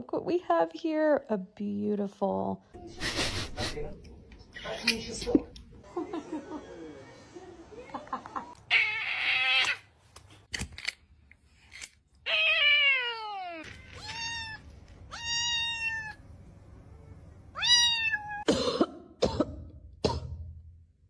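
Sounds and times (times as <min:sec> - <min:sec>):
cat meowing: 0:08.7 - 0:09.9, 0:12.3 - 0:16.2, 0:17.5 - 0:18.5.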